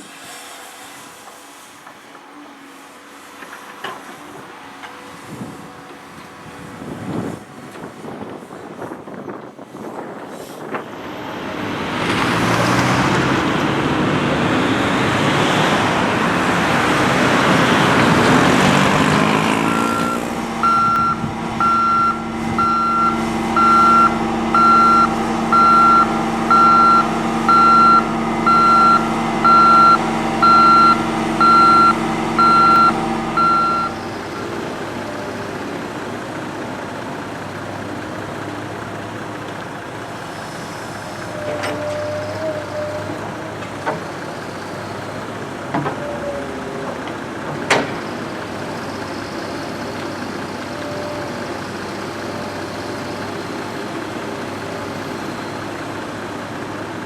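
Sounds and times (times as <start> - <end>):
diesel engine working hard: 0.0 - 57.0
reversing alarm beeping: 19.0 - 34.4.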